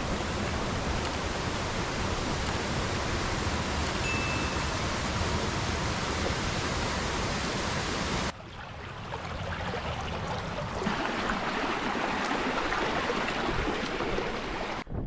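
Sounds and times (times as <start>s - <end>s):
wind on microphone: 14.7s - 15.0s.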